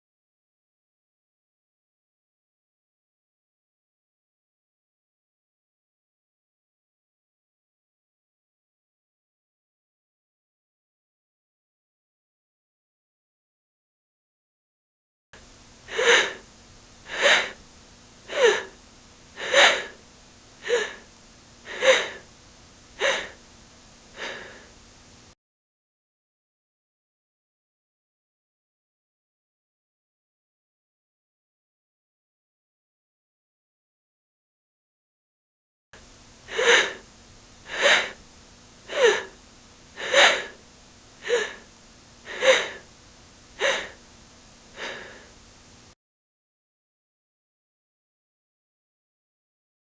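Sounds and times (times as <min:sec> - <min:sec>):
woman panting: 0:15.9 - 0:16.5, 0:17.1 - 0:17.6, 0:18.3 - 0:18.8, 0:19.4 - 0:20.0, 0:20.6 - 0:21.1, 0:21.7 - 0:22.3, 0:23.0 - 0:23.4, 0:24.2 - 0:24.8, 0:36.5 - 0:37.0, 0:37.7 - 0:38.2, 0:38.9 - 0:39.4, 0:40.0 - 0:40.6, 0:41.2 - 0:42.9, 0:43.6 - 0:44.0, 0:44.7 - 0:45.4.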